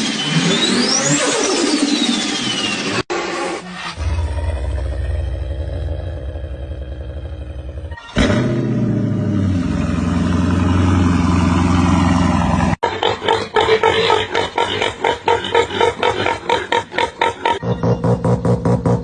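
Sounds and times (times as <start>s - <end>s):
car engine revving hard: 8.2s - 12.8s.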